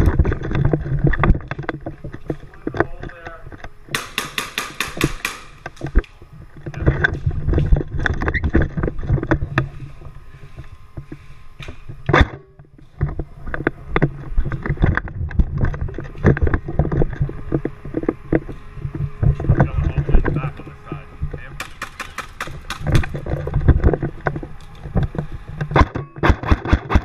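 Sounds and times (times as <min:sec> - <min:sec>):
wind noise on microphone: 0:00.0 - 0:03.3, 0:05.8 - 0:11.1, 0:11.7 - 0:21.7, 0:22.5 - 0:27.0
rumbling movement: 0:00.0 - 0:04.0, 0:05.0 - 0:26.2
airsoft gun shots: 0:03.9 - 0:05.6, 0:21.6 - 0:23.1
gun handling clicks: 0:21.6 - 0:23.1.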